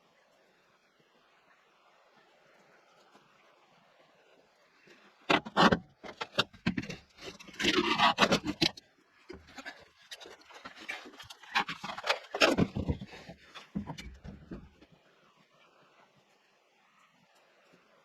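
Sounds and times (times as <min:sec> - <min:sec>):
scraping: 0:05.3 - 0:14.8.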